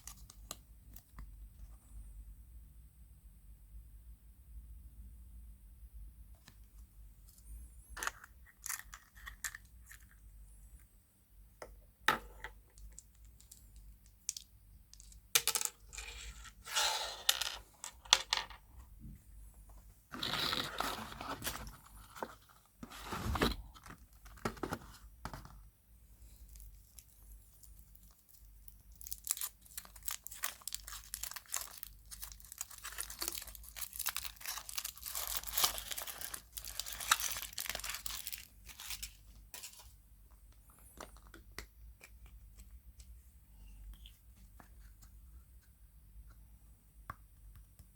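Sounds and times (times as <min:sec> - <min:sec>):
wrappers crinkling: 0:26.5 - 0:39.8.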